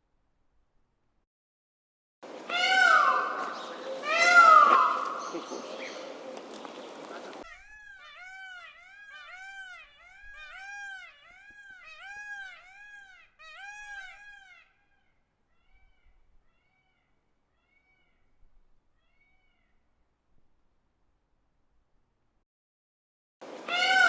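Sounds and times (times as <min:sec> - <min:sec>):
peacock calling: 0:02.3 - 0:18.3, 0:23.4 - 0:24.0.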